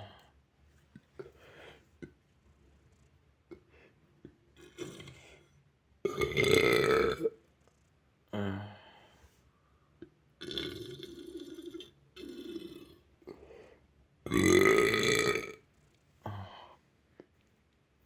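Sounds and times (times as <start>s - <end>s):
boy burping: 4.6s - 5.2s, 6.1s - 7.4s, 10.4s - 12.9s, 14.3s - 15.6s.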